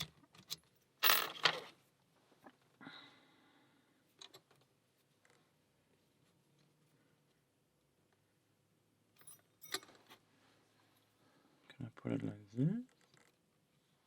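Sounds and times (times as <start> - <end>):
lock picks clinking on padlock: 9.2 - 9.9.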